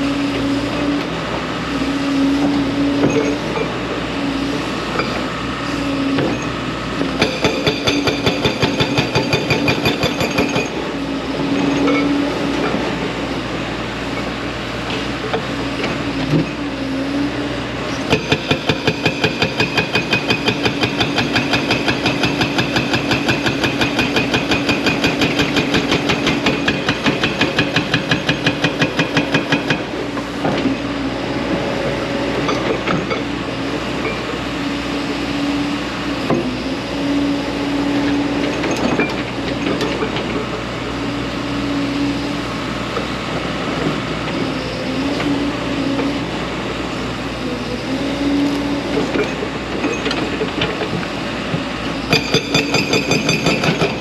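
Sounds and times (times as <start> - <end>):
diesel engine running: 0.0 - 54.0
hydraulic breaker hammering rock: 6.1 - 10.9, 18.0 - 30.7, 48.7 - 54.0.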